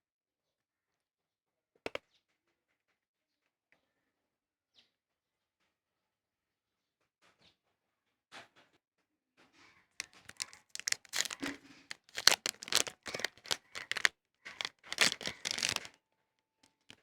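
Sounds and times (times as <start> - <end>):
packaging rustling: 10.0 - 15.9, 16.7 - 17.0
packaging tearing: 10.0 - 15.9.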